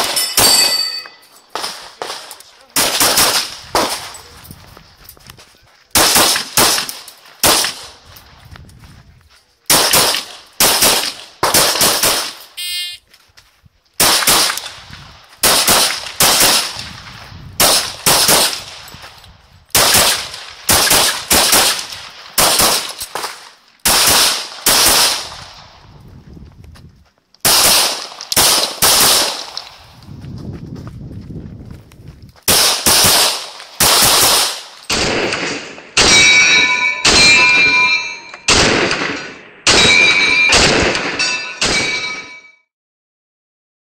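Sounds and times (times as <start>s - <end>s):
pistol firing: 1.5s - 4.1s, 6.0s - 8.0s, 9.7s - 12.4s, 14.0s - 14.8s, 15.4s - 16.8s, 17.6s - 18.8s, 19.7s - 25.5s, 27.4s - 29.8s, 32.5s - 42.4s.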